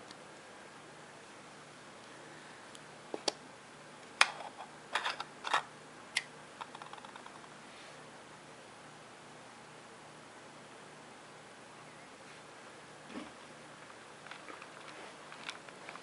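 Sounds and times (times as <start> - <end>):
faint low hum: 0.0 - 16.0
small engine parts clicking: 14.2 - 16.0.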